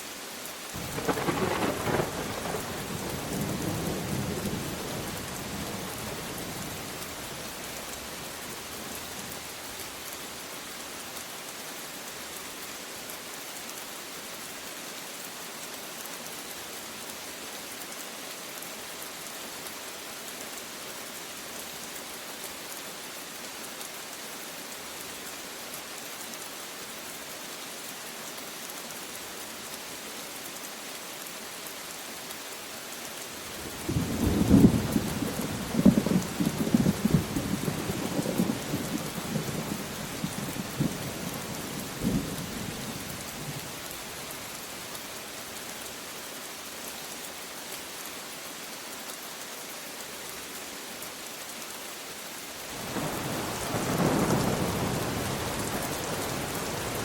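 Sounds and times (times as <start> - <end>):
steady rain falling: 0.0 - 57.0
loud thunderclap: 0.8 - 3.0
thunder rumble: 0.8 - 4.8.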